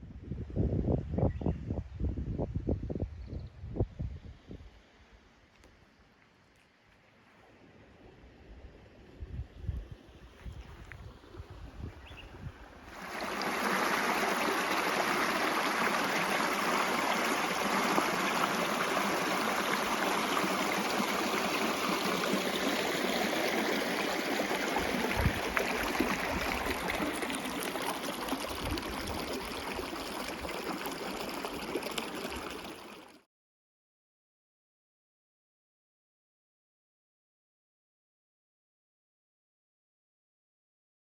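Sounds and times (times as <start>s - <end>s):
rushing water: 10.7s - 33.2s.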